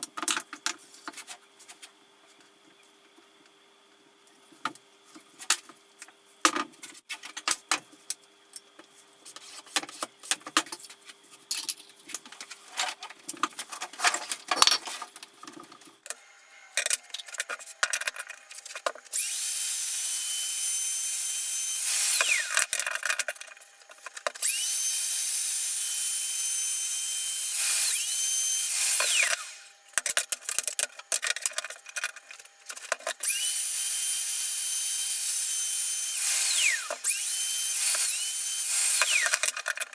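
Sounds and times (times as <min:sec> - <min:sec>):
power tool motor whine: 0:19.1 - 0:23.0, 0:24.4 - 0:29.8, 0:33.2 - 0:39.8.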